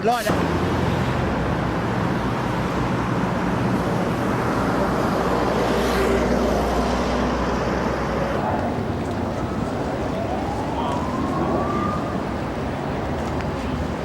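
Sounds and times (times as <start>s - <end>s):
outdoor noise: 0.0s - 14.0s
engine rumble: 0.3s - 14.0s.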